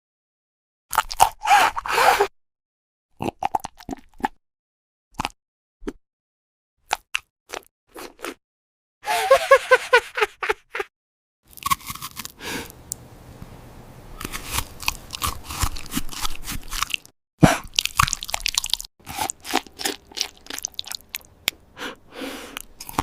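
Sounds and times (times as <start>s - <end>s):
crunching and chewing: 0.9s - 1.5s, 11.5s - 12.8s, 14.2s - 21.6s, 22.5s - 23.0s.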